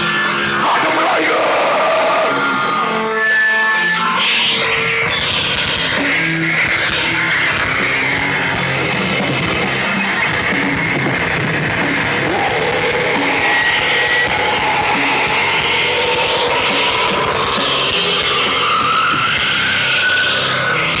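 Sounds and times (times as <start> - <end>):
rock band playing live: 0.0 - 21.0.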